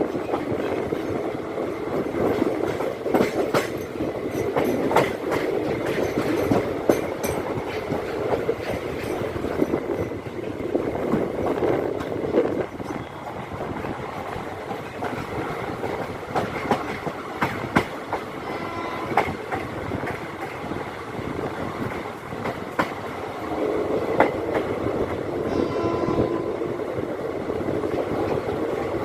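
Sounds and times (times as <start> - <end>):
train wheels clacking over rail joints: 0.0 - 26.4
train rumble: 0.0 - 29.0.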